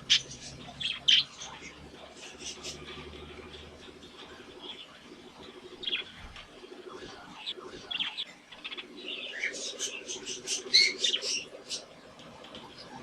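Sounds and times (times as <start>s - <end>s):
budgerigars chirping: 0.0s - 4.9s, 5.5s - 6.2s, 7.1s - 11.9s
low bird chatter: 0.0s - 13.0s.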